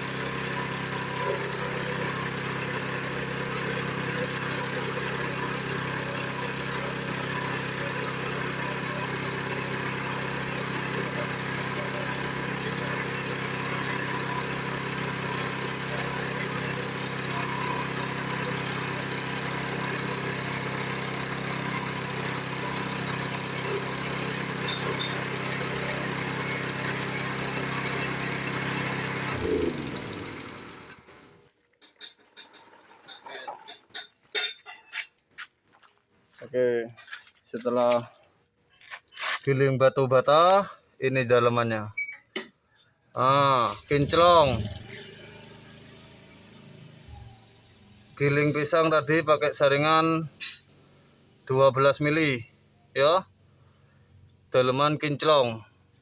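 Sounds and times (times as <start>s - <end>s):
pulping machine grinding brick: 0.0s - 31.6s, 43.6s - 46.6s.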